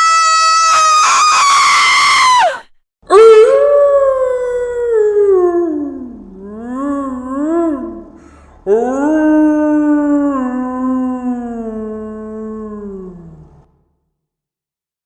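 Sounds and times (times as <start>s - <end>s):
high sustained scream: 0.0s - 2.6s.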